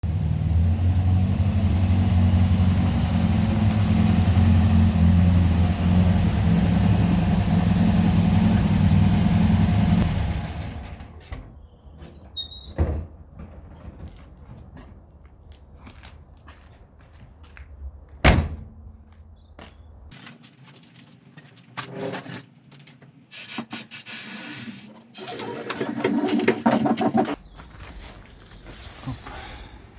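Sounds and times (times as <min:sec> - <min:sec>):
engine running steadily: 0:00.0 - 0:11.1.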